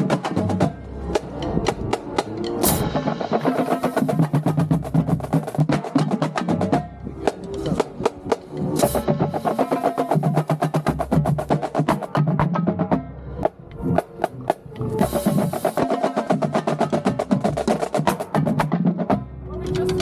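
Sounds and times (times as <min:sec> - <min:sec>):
bass drums: 0:00.0 - 0:20.0
snare and tenor drums: 0:00.0 - 0:20.0.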